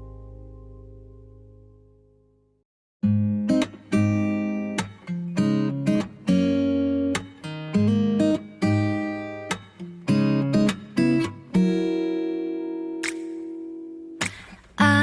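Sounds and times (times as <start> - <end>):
acoustic guitar strumming: 3.0 - 15.0.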